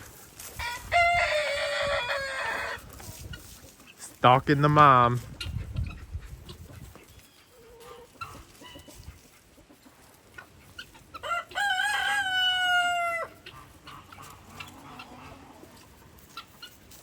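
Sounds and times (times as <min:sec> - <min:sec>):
chicken calls: 0:00.0 - 0:17.0
rooster crowing: 0:00.6 - 0:02.8, 0:11.2 - 0:13.4.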